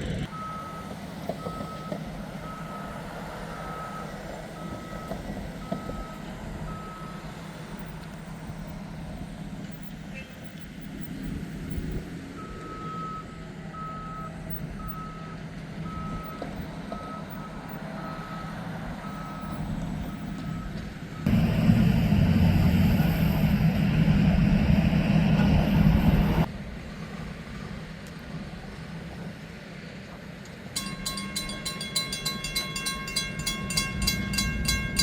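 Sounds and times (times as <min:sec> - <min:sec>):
loud steady rushing sound: 0:21.3 - 0:27.5.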